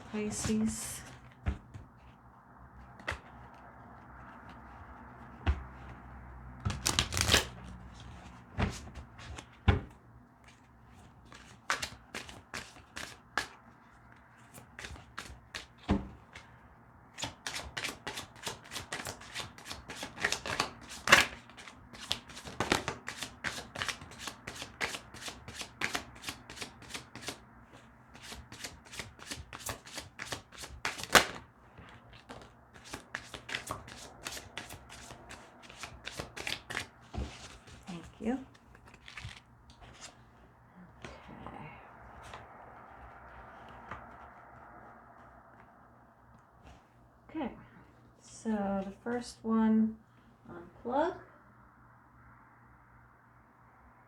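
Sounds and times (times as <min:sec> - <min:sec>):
cards being shuffled: 0:02.8 - 0:16.5, 0:17.2 - 0:27.4, 0:28.1 - 0:40.4.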